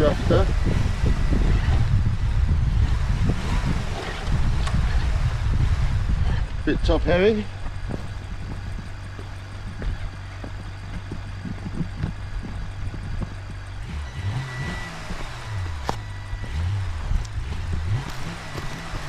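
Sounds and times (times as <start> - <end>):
truck engine idling and revving: 0.0 - 19.0.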